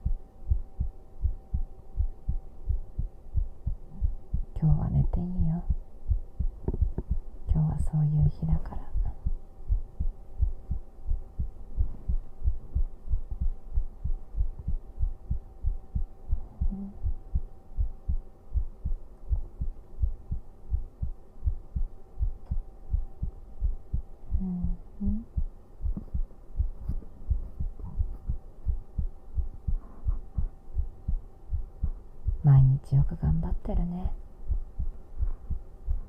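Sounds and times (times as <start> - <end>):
heartbeat thumping: 0.0 - 36.0.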